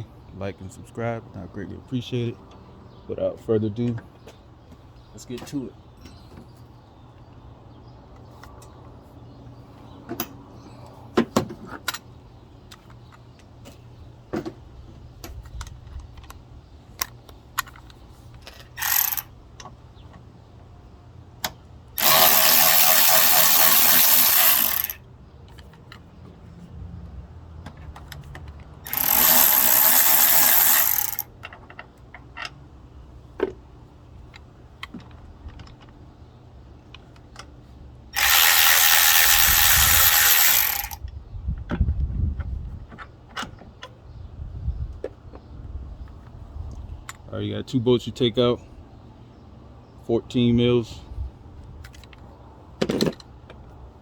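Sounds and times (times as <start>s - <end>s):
hand tools and metal parts clinking: 17.0s - 20.2s, 22.0s - 26.1s, 27.6s - 32.6s, 38.2s - 41.0s
power tool running: 18.8s - 19.2s, 22.0s - 25.0s, 28.8s - 31.2s, 38.2s - 41.0s.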